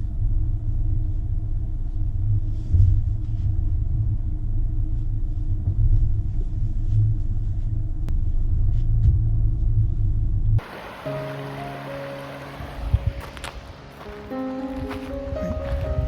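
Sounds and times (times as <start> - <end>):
car driving rumble: 0.2 - 16.0
faint steady drone: 10.6 - 16.0.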